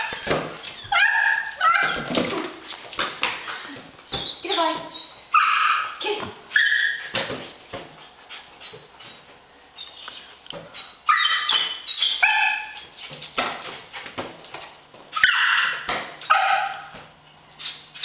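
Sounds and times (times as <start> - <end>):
puppy yipping: 0.0 - 2.2, 4.2 - 7.1, 11.1 - 12.8, 15.2 - 16.8, 17.6 - 18.0.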